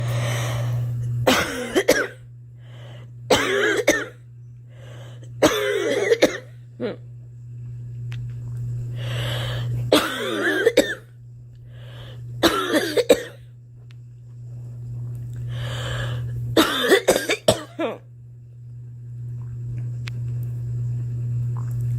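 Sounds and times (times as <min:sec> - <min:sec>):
steady low hum: 0:00.0 - 0:21.9
girl coughing: 0:01.3 - 0:02.2, 0:03.3 - 0:04.2, 0:05.4 - 0:07.0, 0:09.9 - 0:11.0, 0:12.4 - 0:13.4, 0:16.6 - 0:18.0.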